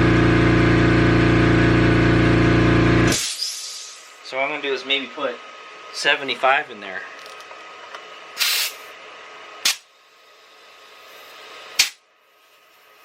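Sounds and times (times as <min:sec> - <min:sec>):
compressed air hissing into tire: 0:03.1 - 0:04.2, 0:08.4 - 0:08.9, 0:09.6 - 0:13.0.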